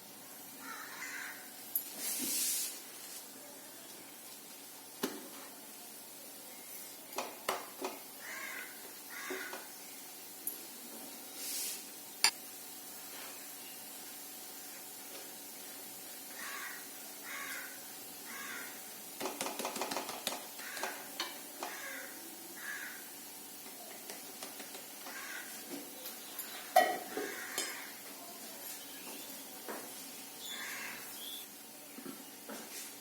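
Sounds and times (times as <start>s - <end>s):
crow cawing: 0.6s - 1.5s, 8.2s - 9.7s, 16.3s - 18.8s, 20.6s - 23.1s, 25.1s - 25.6s, 27.1s - 28.0s, 30.5s - 31.1s
rapid clicks: 19.2s - 20.9s.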